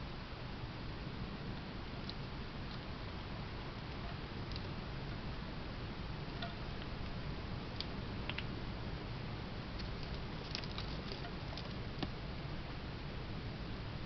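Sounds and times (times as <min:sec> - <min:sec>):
background hiss: 0:00.0 - 0:14.0
squirrel rummaging in bird seed: 0:09.8 - 0:12.1.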